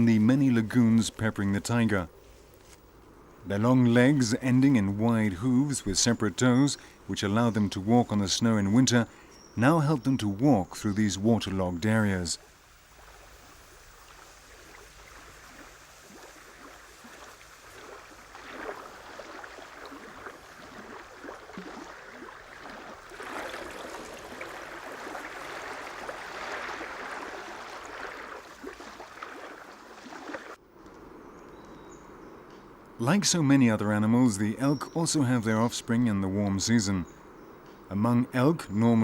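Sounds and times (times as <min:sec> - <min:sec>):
animal wading through water: 0:04.0 - 0:30.6.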